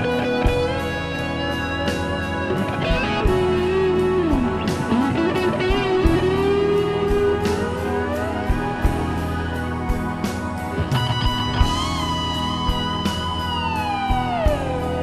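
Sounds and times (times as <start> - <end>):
guitar melody with bends: 0.0 - 15.0
drum strikes: 1.8 - 13.5.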